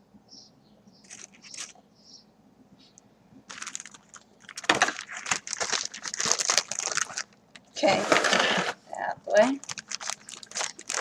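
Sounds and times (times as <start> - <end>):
packaging crinkling and tearing: 1.0 - 1.8, 3.5 - 8.8, 9.4 - 11.0
packaging rustling: 1.0 - 1.8, 3.5 - 11.0.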